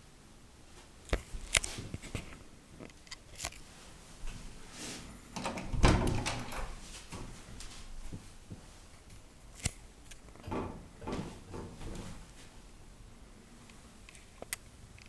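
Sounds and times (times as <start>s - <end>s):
sharp clicks and knocks: 5.4s - 6.7s, 9.6s - 12.1s.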